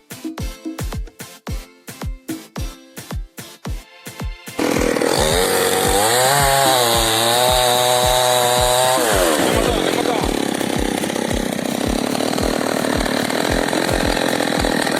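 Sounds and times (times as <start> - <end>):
background music with steady beat: 0.0 - 14.9
chainsaw cutting: 4.6 - 14.9.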